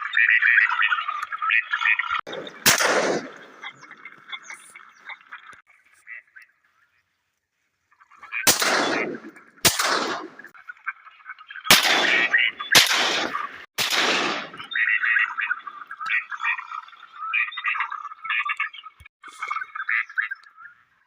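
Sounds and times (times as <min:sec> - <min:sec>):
shotgun shots with echo: 0:02.3 - 0:03.7, 0:08.5 - 0:10.5, 0:11.7 - 0:14.7.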